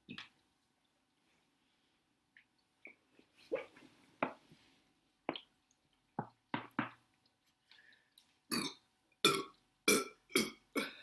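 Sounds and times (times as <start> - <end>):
woman burping: 8.5 - 11.0.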